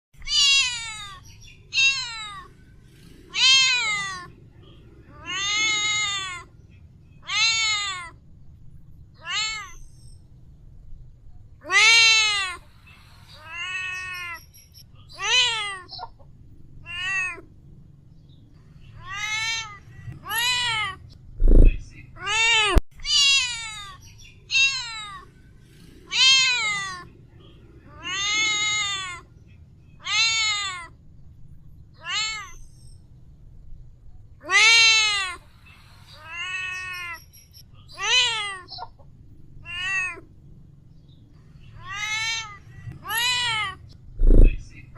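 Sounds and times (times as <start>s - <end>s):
cat meowing: 0.2s - 2.5s, 3.2s - 4.4s, 5.1s - 6.5s, 7.2s - 8.2s, 9.2s - 9.9s, 11.6s - 12.6s, 13.3s - 14.4s, 15.1s - 16.2s, 16.8s - 17.5s, 18.9s - 25.3s, 26.1s - 27.2s, 27.9s - 29.3s, 30.0s - 31.0s, 32.0s - 32.7s, 34.4s - 35.4s, 37.9s - 39.0s, 39.6s - 40.3s, 41.7s - 44.5s.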